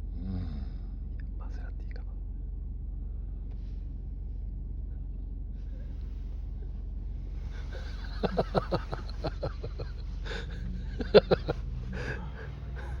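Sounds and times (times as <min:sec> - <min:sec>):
low hum: 0:00.0 - 0:13.0
person stifling laughter: 0:07.5 - 0:13.0.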